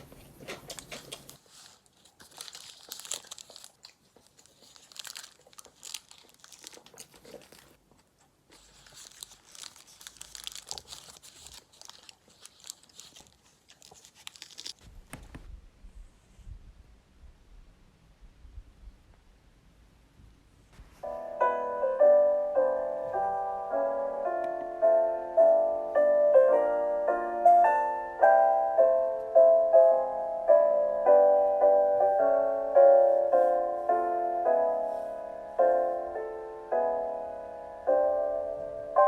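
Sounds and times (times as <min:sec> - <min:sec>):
gentle piano melody: 0:20.9 - 0:39.0.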